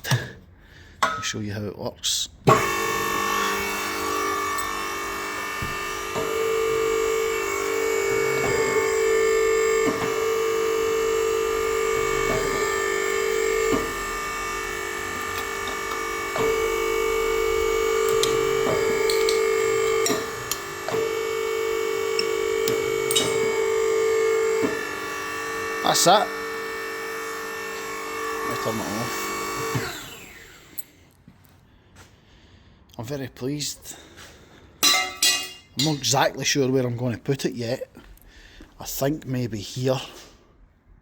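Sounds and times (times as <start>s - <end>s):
electric motor humming: 2.5s - 30.9s.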